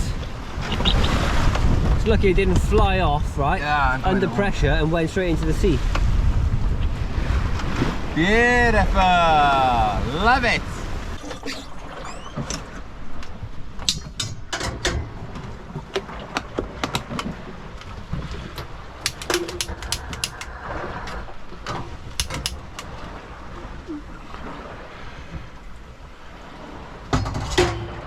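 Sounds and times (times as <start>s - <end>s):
wind and water rumble: 0.0s - 28.0s
sharp clicks and knocks: 19.0s - 20.5s, 21.7s - 22.9s.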